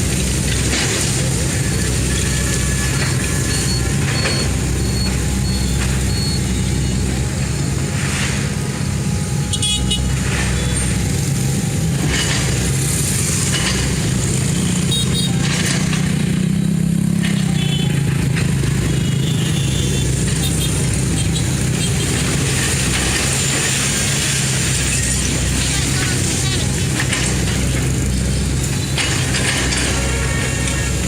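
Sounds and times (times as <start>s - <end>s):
heavy machine engine running: 0.0s - 31.0s
clanks and clatter: 0.1s - 6.2s, 11.9s - 19.0s, 20.2s - 31.0s.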